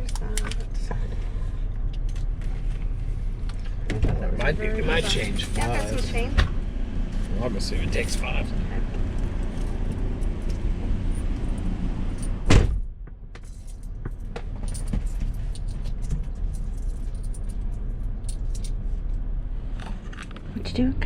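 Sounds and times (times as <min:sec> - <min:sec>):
vehicle engine idling: 0:00.0 - 0:12.5
car door slamming: 0:12.4 - 0:12.9.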